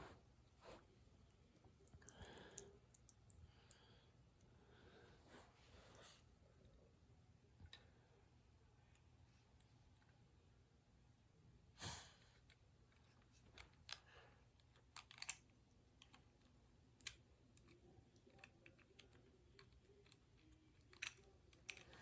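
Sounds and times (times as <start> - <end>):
toy parts clicking and tapping: 12.9 - 22.0.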